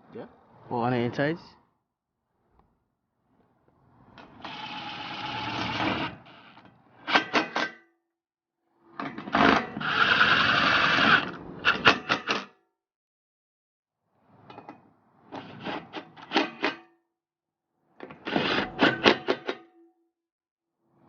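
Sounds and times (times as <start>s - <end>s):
cordless drill running: 4.4s - 6.2s, 9.4s - 11.2s.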